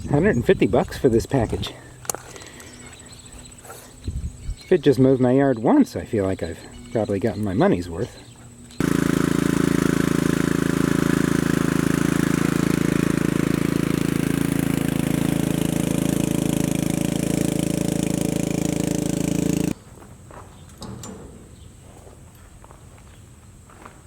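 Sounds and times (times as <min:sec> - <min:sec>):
riding lawnmower engine running: 0:01.4 - 0:05.0, 0:06.0 - 0:19.8.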